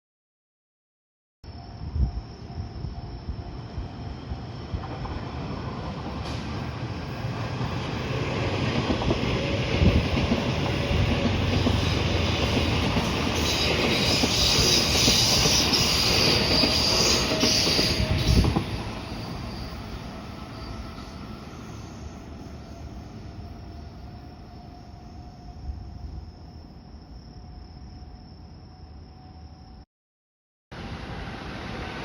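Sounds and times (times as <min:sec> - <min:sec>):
train wheels rumbling on rails: 0:02.1 - 0:24.5
high-pitched wheel squeal: 0:13.1 - 0:25.2.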